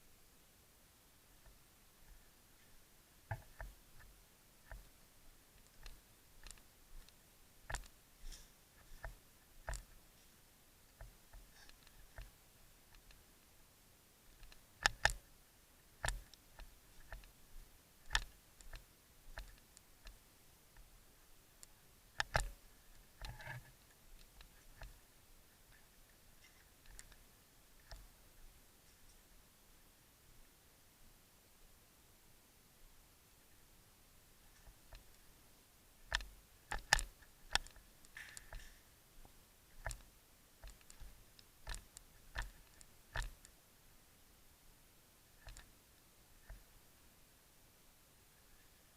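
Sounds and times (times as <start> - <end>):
faint clicks: 1.4 - 13.5, 14.3 - 15.3, 15.9 - 29.3, 34.4 - 35.4, 36.0 - 43.6, 45.3 - 46.8.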